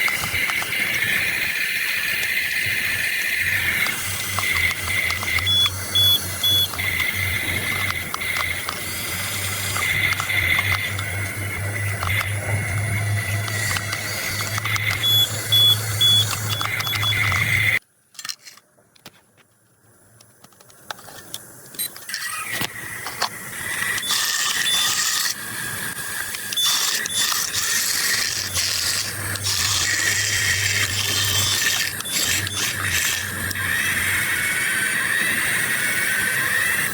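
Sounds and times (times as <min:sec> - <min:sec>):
model excavator motor whine: 0:00.0 - 0:17.8, 0:21.9 - 0:36.9
mechanical clicking and rattling: 0:00.0 - 0:19.1, 0:20.3 - 0:36.9.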